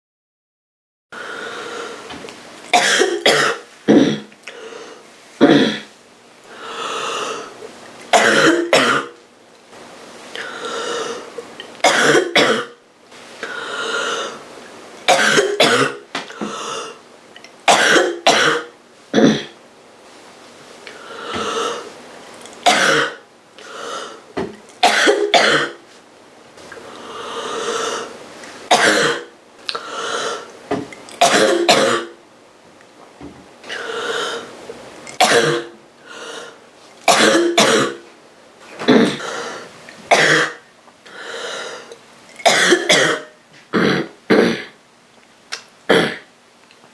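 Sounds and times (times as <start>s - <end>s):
girl coughing: 2.8s - 4.3s, 5.4s - 5.9s, 8.2s - 9.1s, 11.8s - 12.8s, 15.1s - 16.0s, 17.7s - 19.6s, 22.7s - 23.2s, 24.8s - 25.8s, 28.7s - 29.3s, 31.2s - 32.2s, 35.2s - 35.7s, 37.1s - 38.0s, 40.1s - 40.6s, 42.5s - 44.8s.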